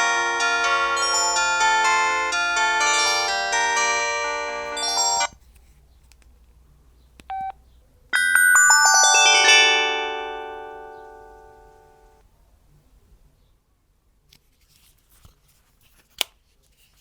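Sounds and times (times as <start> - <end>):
bright chiming notes: 0.0 - 5.3, 8.2 - 12.2
phone ringtone melody: 0.0 - 5.3, 8.2 - 12.2.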